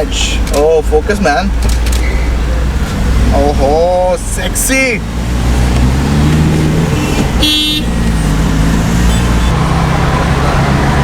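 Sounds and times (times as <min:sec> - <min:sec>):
road traffic drone: 0:00.0 - 0:11.0
car horn toot: 0:06.9 - 0:08.1.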